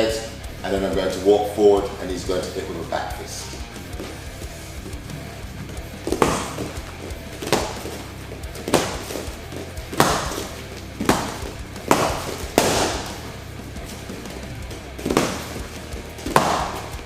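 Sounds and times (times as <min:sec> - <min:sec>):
background music: 0:00.0 - 0:17.0
punches hitting strike pads: 0:03.8 - 0:17.0.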